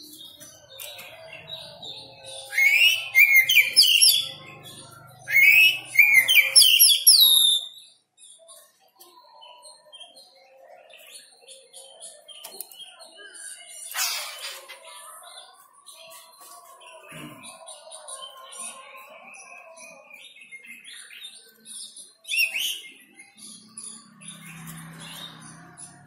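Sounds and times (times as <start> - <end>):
bird chirps: 0.0 - 14.6.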